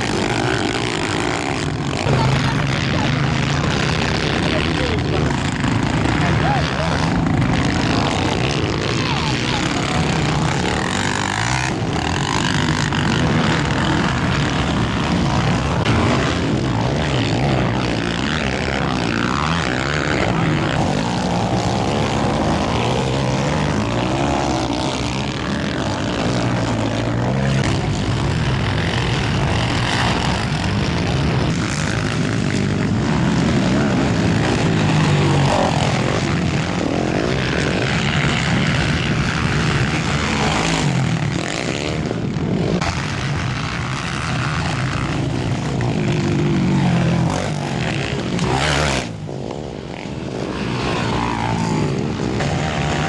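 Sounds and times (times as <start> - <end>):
quad engines revving: 0.0 - 53.0.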